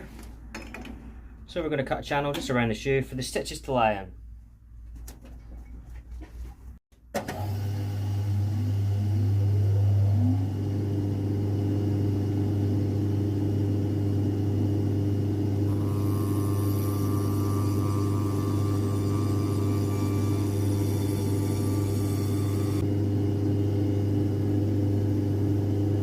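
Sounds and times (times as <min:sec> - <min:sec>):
electric motor spinning up and humming: 0:07.3 - 0:22.9.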